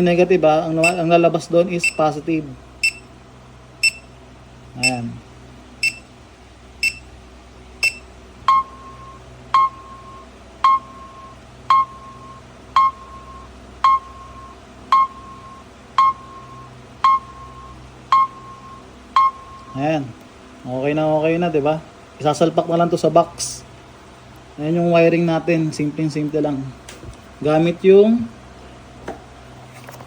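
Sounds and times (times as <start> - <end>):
timer buzzer beeping: 0.8 - 1.0, 1.8 - 2.2, 2.8 - 3.1, 3.8 - 4.1, 4.8 - 5.1, 5.8 - 6.1, 6.8 - 7.1, 7.8 - 19.9.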